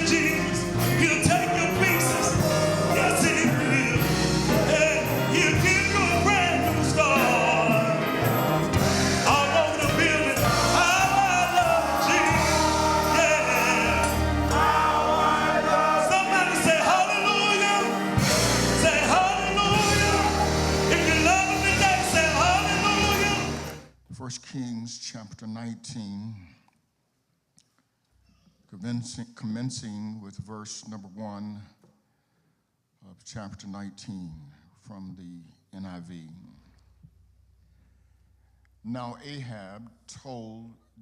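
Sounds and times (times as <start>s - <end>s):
gospel singers over a band: 0.0s - 23.8s.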